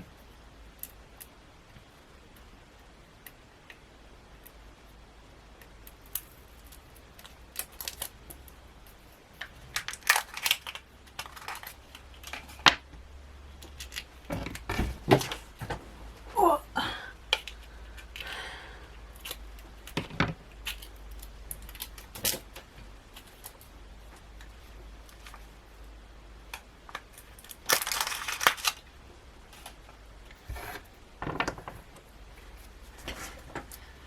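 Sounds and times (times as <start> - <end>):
packaging crinkling: 9.4 - 12.8, 26.9 - 28.9.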